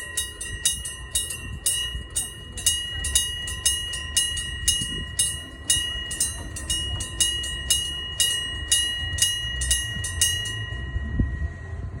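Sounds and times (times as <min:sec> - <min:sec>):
level-crossing warning bell clanging: 0:00.0 - 0:12.0.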